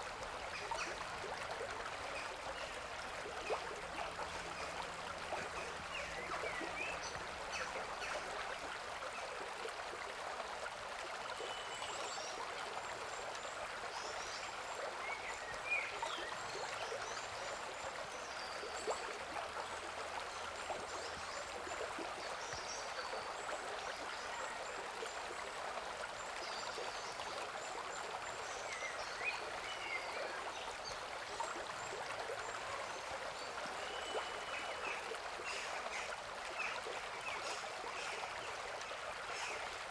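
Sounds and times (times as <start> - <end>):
stream babbling and splashing: 0.0 - 39.9.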